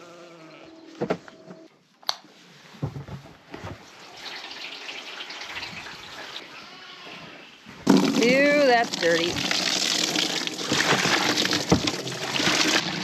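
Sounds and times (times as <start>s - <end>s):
water running: 7.9s - 13.0s.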